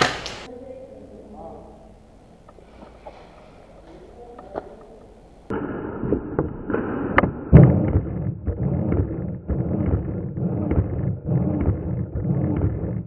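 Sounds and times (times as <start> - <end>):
sharp knocks and pops: 5.5 - 13.0.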